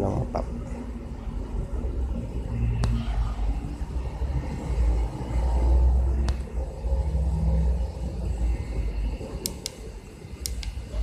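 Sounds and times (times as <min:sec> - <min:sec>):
low rumble: 0:00.0 - 0:11.0
battery charger control clicks: 0:09.4 - 0:09.8, 0:10.4 - 0:10.8.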